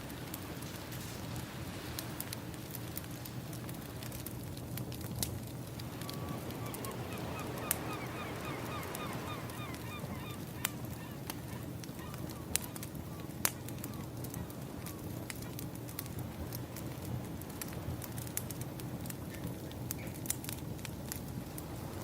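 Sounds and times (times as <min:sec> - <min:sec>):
wood fire crackling: 0:00.0 - 0:22.0
surf rushing: 0:05.6 - 0:13.0, 0:21.4 - 0:22.0
birds honking: 0:05.8 - 0:14.1.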